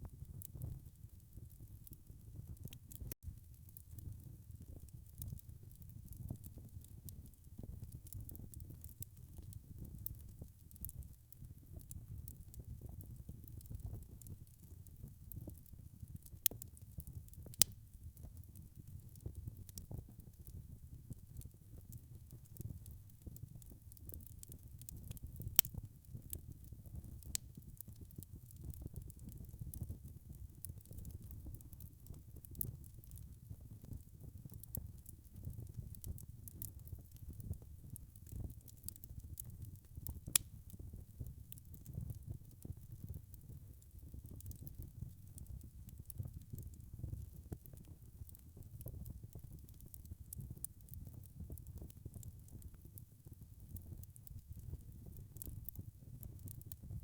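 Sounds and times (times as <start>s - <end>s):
wood crackling and popping: 0.2s - 57.0s
fire rumbling: 16.2s - 21.2s, 38.2s - 41.0s.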